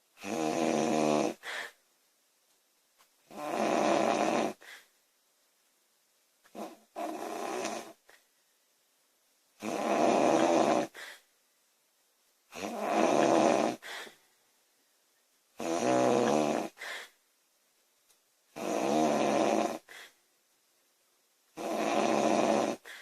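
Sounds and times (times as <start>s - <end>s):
woman snoring loudly: 0.2s - 1.7s, 3.3s - 4.7s, 6.5s - 8.0s, 9.6s - 11.0s, 12.5s - 14.1s, 15.6s - 17.1s, 18.6s - 19.9s, 21.6s - 23.0s.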